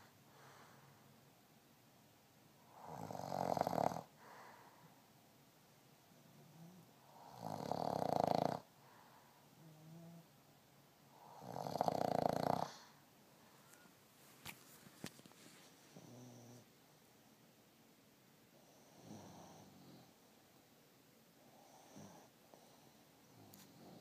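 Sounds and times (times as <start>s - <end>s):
soft breathing: 0.0s - 1.2s, 4.1s - 5.1s, 8.7s - 10.3s, 12.6s - 16.7s
man snoring: 2.8s - 4.1s, 6.6s - 8.7s, 11.2s - 12.9s, 18.9s - 20.0s.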